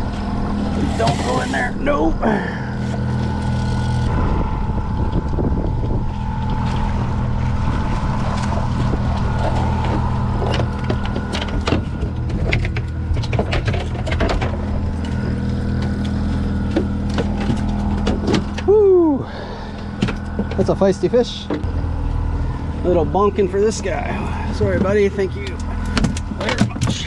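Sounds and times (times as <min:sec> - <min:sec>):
boat motor running: 0:00.0 - 0:27.0
sharp clicks and knocks: 0:24.8 - 0:27.0.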